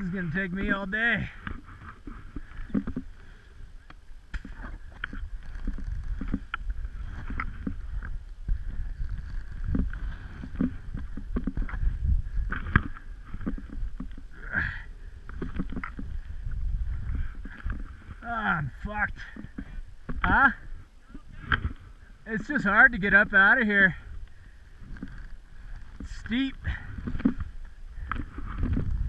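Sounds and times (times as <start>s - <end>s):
wind rumbling on microphone: 0.0s - 29.0s
skis scraping through snow: 4.5s - 12.4s.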